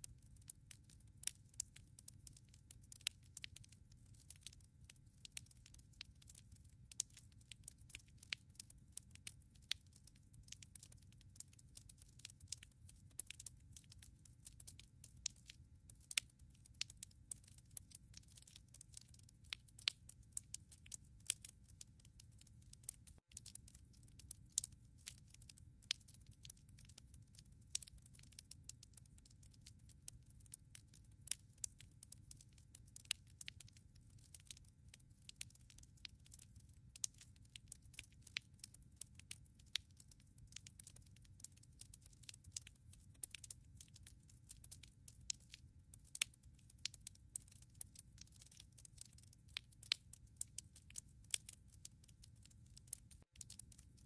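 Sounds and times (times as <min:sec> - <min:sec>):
fire crackling and popping: 0:00.3 - 0:54.0.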